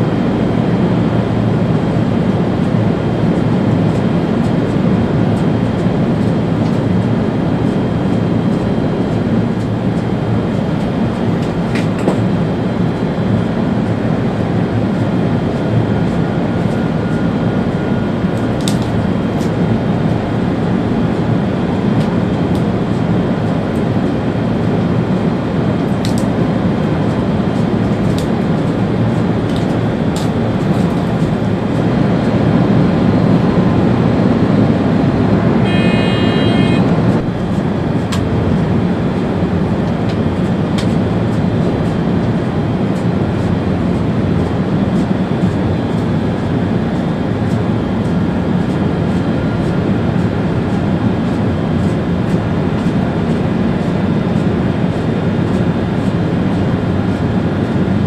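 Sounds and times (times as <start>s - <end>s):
train rumbling at speed: 0.0s - 58.0s
high electronic tone: 35.6s - 37.3s.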